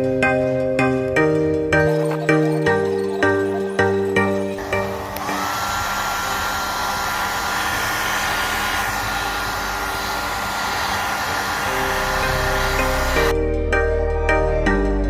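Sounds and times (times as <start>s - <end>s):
hot-air blower running: 4.5s - 13.4s.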